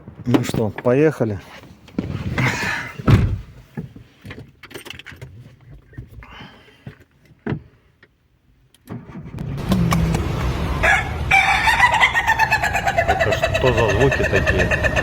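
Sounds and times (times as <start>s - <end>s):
ignition clicks: 8.7s - 10.5s
car engine cranking and starting: 8.7s - 12.2s.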